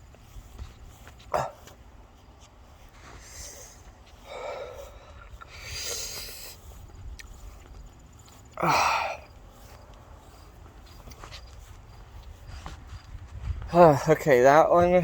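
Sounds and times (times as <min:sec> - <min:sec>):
man breathing hard: 0:00.3 - 0:11.2
man groaning: 0:01.3 - 0:01.7, 0:08.6 - 0:09.2.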